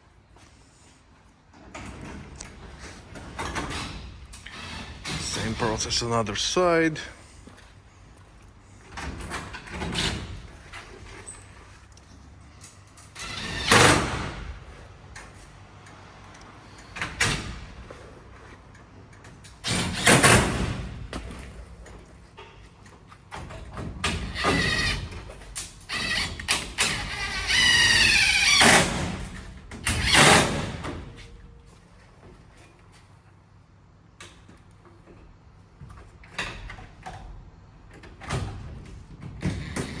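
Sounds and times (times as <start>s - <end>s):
knocks and rattles of door parts: 1.6s - 5.7s, 19.2s - 21.9s, 23.3s - 31.2s, 35.8s - 40.0s.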